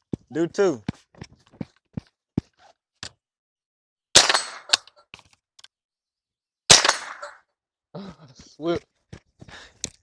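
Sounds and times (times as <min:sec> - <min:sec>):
rifle shots: 0:04.2 - 0:04.9, 0:06.7 - 0:07.4.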